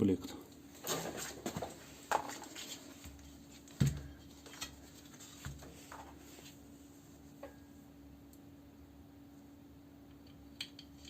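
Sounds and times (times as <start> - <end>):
faint steady hum: 0.0 - 11.0
small parts clicking and tapping: 10.0 - 11.0.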